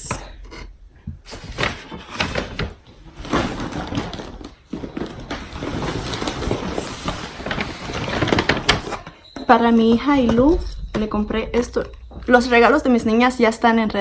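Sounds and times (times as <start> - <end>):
rustling packaging: 1.3 - 11.1.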